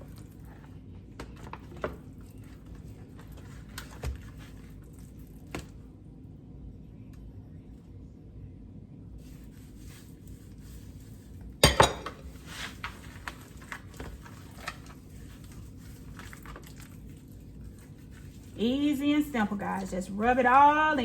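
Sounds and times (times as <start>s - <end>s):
hands rubbing seasoning into meat: 9.2s - 11.4s, 15.1s - 20.6s
kitchenware clattering: 11.6s - 12.4s.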